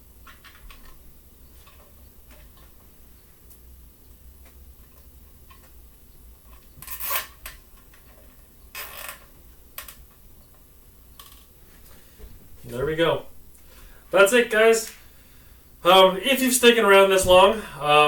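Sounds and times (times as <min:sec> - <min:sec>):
zip tie zipping rasps: 0:06.8 - 0:07.4.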